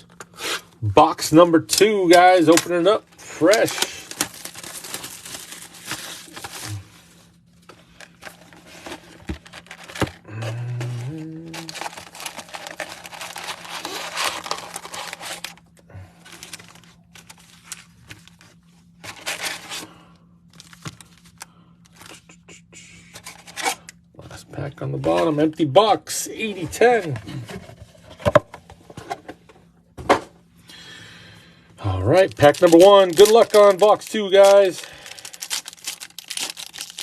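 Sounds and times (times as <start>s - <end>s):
plastic wrap tearing and crinkling: 2.1s - 7.0s, 8.2s - 10.3s, 11.0s - 15.6s, 16.2s - 19.8s, 32.1s - 37.0s
cardboard and packs rustling: 2.5s - 15.6s, 16.2s - 19.9s, 32.1s - 37.0s
low tone: 10.3s - 11.8s.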